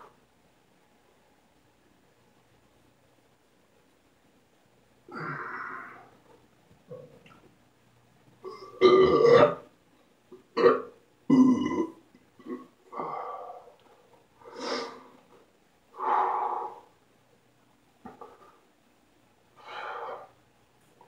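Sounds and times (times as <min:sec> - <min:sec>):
man belching loudly: 0:08.8 - 0:09.7, 0:10.6 - 0:12.7.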